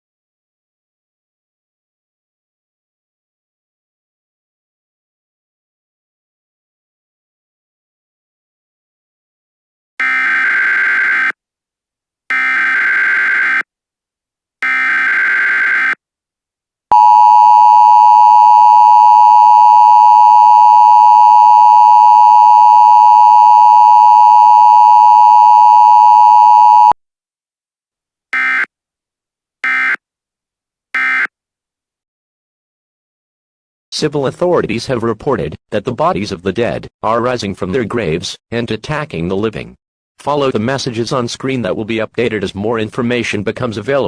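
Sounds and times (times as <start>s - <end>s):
harsh two-tone attention signal: 16.9s - 27.0s, 31.0s - 31.3s.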